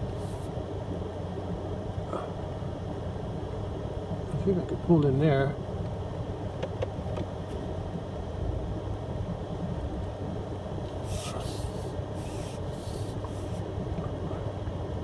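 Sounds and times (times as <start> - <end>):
truck engine running low: 0.0 - 15.0
brush scraping truck body: 11.0 - 13.6.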